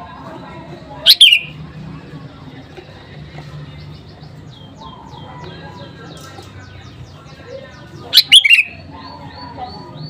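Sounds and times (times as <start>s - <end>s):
low background murmur: 0.0s - 10.0s
bird chirping: 1.0s - 1.6s, 3.6s - 10.0s.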